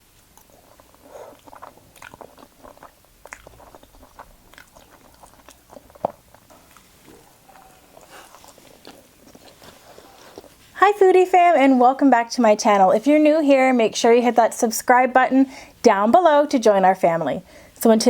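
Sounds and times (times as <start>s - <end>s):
person chewing food: 0.2s - 10.8s.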